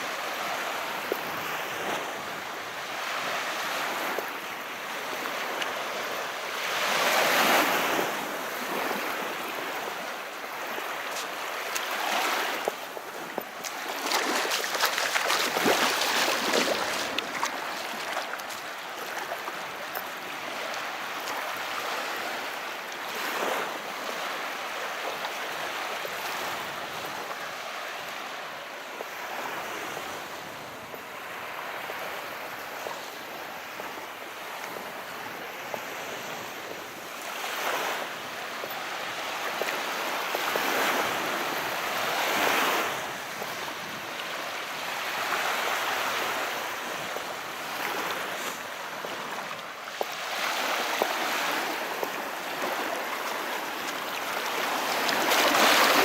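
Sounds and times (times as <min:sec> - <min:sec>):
sea surf washing in: 0:06.7 - 0:21.0, 0:45.0 - 0:56.0.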